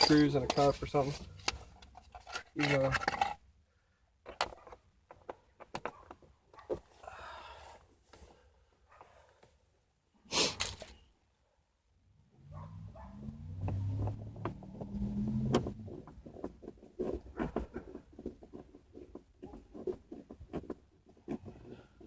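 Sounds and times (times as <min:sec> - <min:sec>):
clicks of handling screws and trim: 0:00.0 - 0:03.4.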